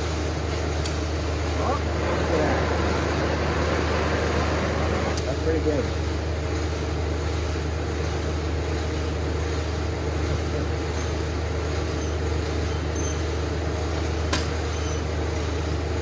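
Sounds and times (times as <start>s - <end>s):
shop equipment humming: 0.0s - 6.7s.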